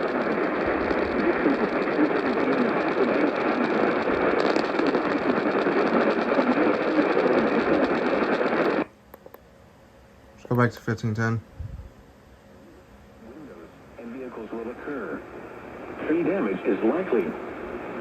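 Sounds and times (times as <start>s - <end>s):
faint radio audio: 0.0s - 8.9s, 12.6s - 18.0s
radio static: 0.0s - 8.9s, 13.2s - 18.0s.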